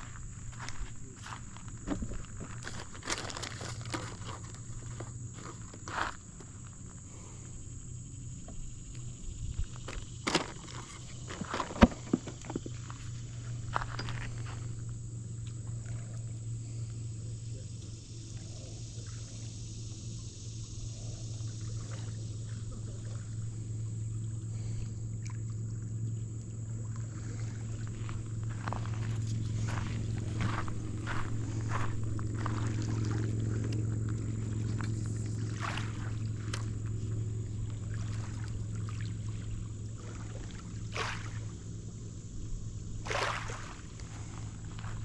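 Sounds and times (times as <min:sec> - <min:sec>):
low motor hum: 0:00.0 - 0:45.0
water splashing: 0:20.8 - 0:41.6, 0:43.0 - 0:45.0.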